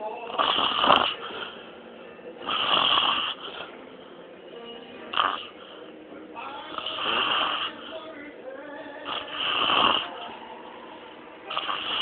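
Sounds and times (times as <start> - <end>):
man snoring: 0.3 - 1.6, 2.4 - 3.7, 5.1 - 5.6, 6.7 - 8.2, 9.0 - 10.4, 11.5 - 12.0.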